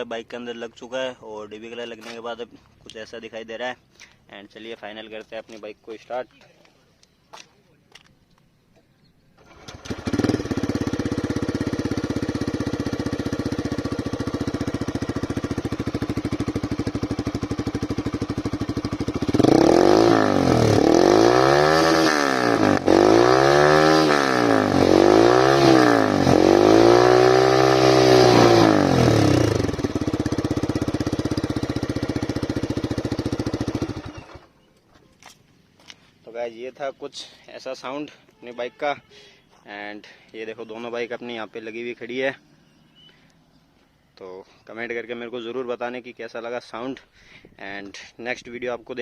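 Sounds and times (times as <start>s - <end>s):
motorcycle engine idling and revving: 9.4s - 34.7s.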